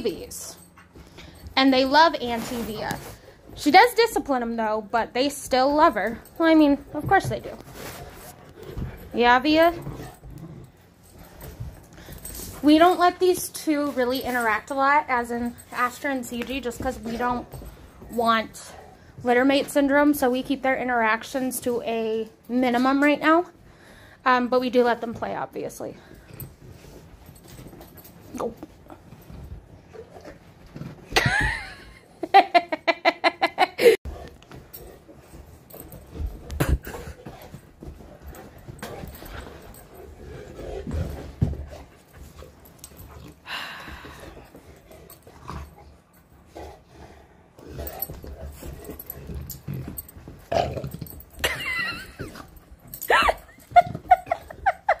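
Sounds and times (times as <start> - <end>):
person laughing: 31.2 - 34.0, 51.4 - 52.4, 53.1 - 55.0.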